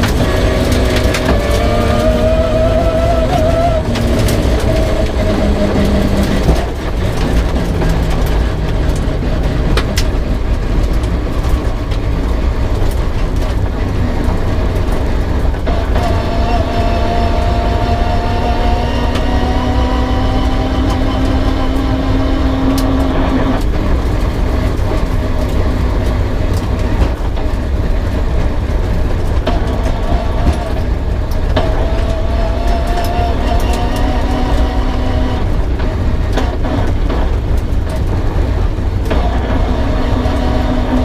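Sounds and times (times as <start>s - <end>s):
low road rumble: 0.0s - 41.0s
rally car engine revving: 0.0s - 41.0s.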